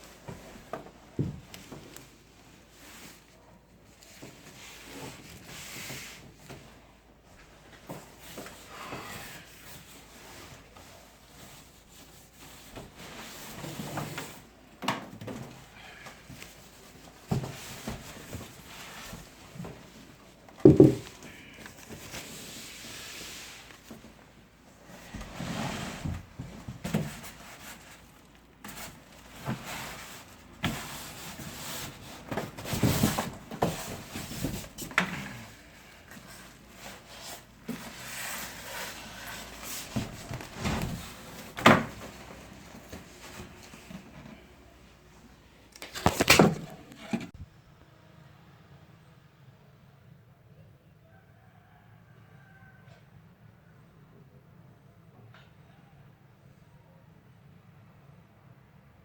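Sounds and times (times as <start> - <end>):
packing materials rubbing and sliding: 27.1 - 43.9.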